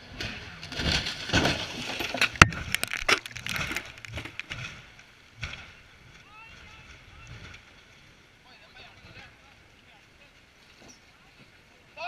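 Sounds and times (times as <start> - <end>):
racing car crashing: 0.0 - 5.9.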